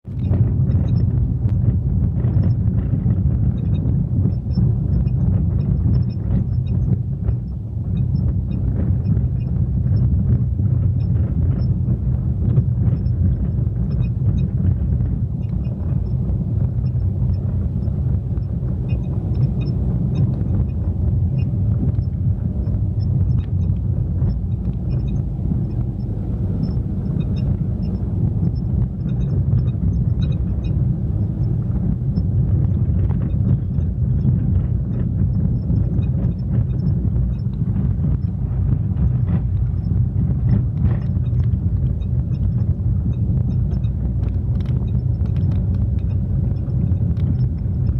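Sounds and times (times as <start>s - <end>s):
road and tyre rumble: 0.0s - 47.9s
rattling ticks from wheel: 39.0s - 47.9s.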